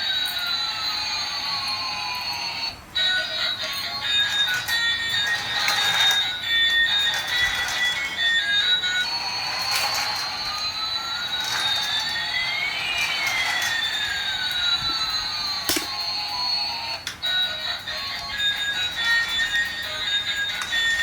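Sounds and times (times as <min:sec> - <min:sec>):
toy jet engine whine: 0:00.0 - 0:21.0.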